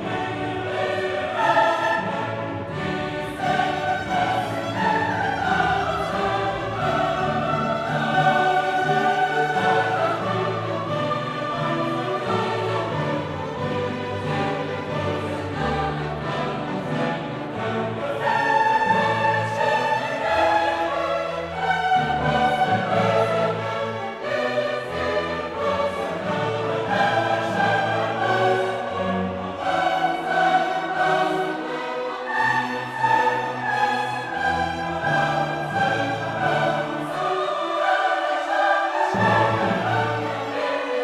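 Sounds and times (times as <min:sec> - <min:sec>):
choir singing held notes: 0:00.0 - 0:41.0
orchestral music: 0:00.0 - 0:41.0.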